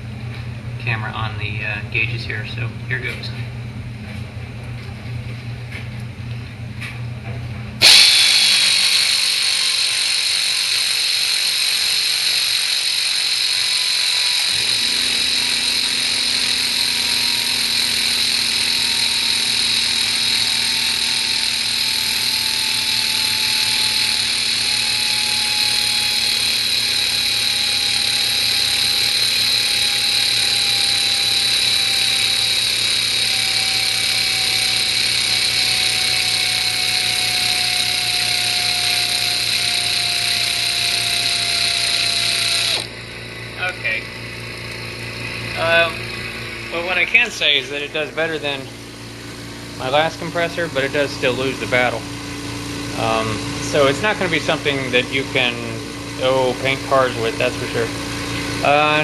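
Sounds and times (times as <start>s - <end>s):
air compressor humming: 0.0s - 59.0s
pneumatic air ratchet whine: 7.8s - 59.0s.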